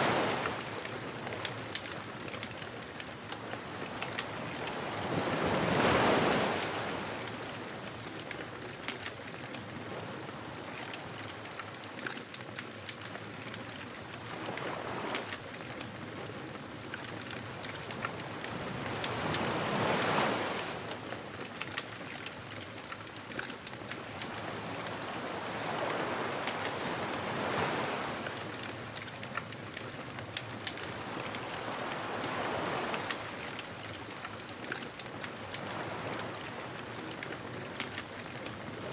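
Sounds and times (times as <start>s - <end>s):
ocean surf breaking: 0.0s - 1.9s, 2.6s - 8.2s, 17.6s - 21.0s, 24.0s - 28.6s, 30.6s - 34.0s
wood fire crackling: 0.0s - 38.9s.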